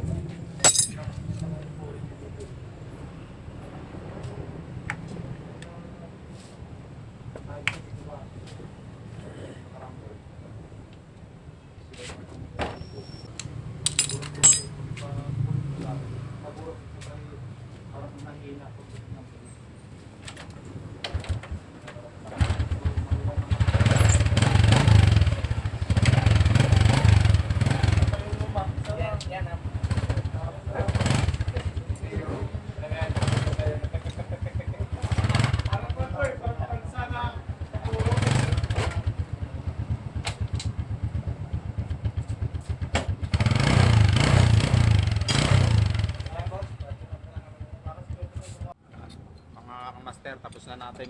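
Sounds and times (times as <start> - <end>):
motorcycle engine starting: 22.2 - 29.0, 29.6 - 36.2, 37.5 - 48.6.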